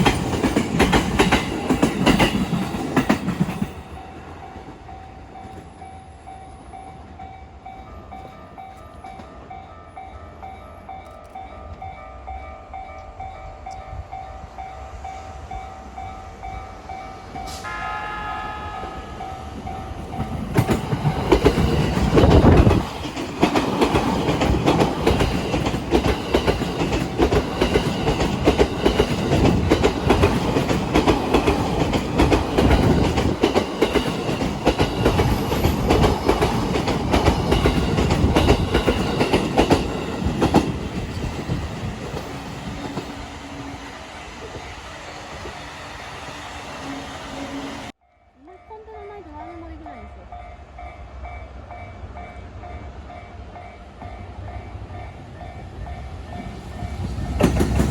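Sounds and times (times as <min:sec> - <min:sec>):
train wheels clickety-clack: 0:00.0 - 0:06.7, 0:18.8 - 0:43.8, 0:54.0 - 0:57.9
level crossing warning bell: 0:00.0 - 0:43.3, 0:48.0 - 0:57.1
train horn: 0:17.5 - 0:20.0.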